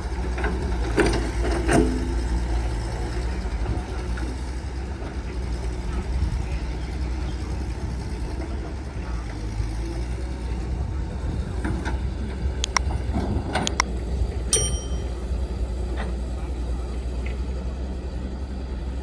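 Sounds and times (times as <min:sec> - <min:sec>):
diesel engine rumbling: 0:00.0 - 0:19.0.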